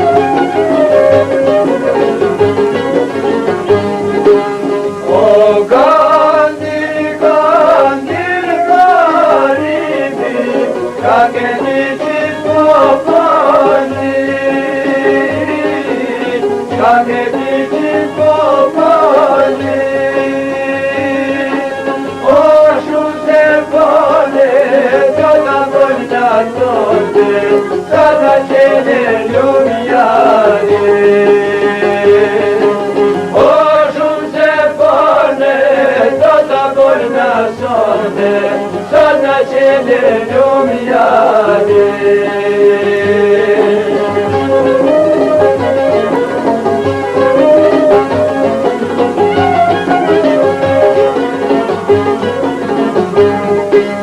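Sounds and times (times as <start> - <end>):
folk music with ornamented melody: 0.0 - 54.0
rhythmic accompaniment: 0.0 - 54.0.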